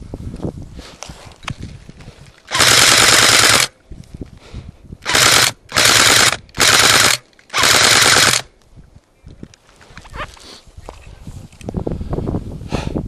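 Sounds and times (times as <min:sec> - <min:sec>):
airsoft gun full-auto bursts: 0:02.5 - 0:03.8, 0:05.0 - 0:08.5.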